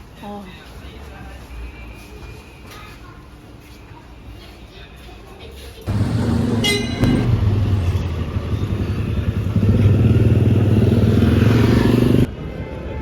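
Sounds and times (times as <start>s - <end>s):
vehicle engine droning: 5.9s - 12.3s
brief high-pitched tone: 6.6s - 7.3s.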